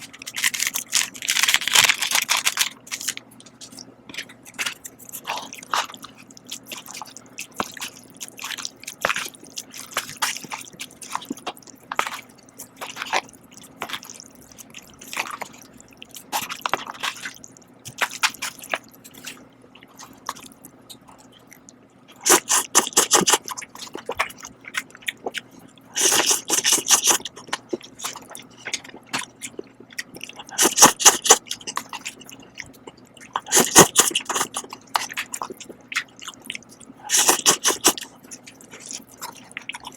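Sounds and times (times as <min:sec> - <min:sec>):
wet chewing and mouth smacks: 0:00.0 - 0:39.9
loud noodle slurps: 0:22.2 - 0:23.4, 0:26.0 - 0:27.2, 0:30.6 - 0:31.4, 0:33.5 - 0:34.6, 0:37.1 - 0:38.0.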